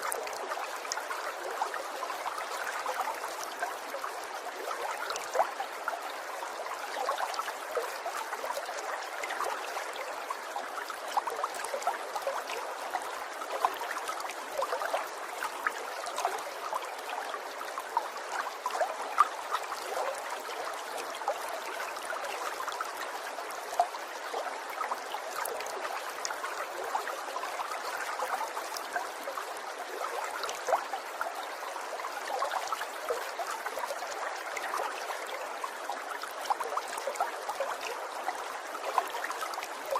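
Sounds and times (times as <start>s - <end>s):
stream trickling and babbling: 0.0s - 39.9s.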